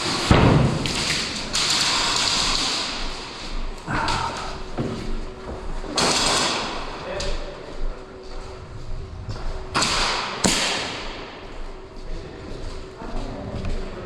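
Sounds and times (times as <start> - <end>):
rustling noise: 8.0 - 10.5.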